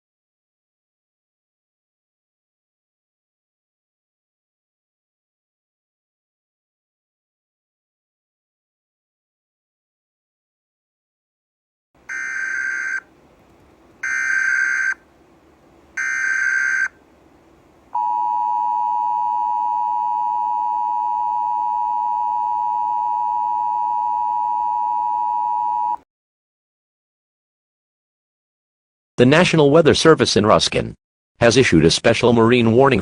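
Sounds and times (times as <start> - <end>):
shrill digital data tones: 12.1 - 13.0, 14.0 - 15.0, 16.0 - 17.0
steady two-tone attention signal: 14.0 - 15.0, 16.0 - 17.0, 18.0 - 26.0.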